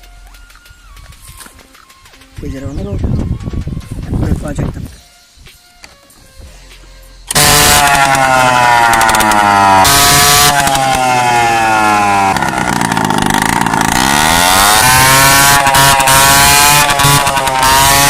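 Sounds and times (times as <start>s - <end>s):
scooter engine revving: 7.2s - 18.0s.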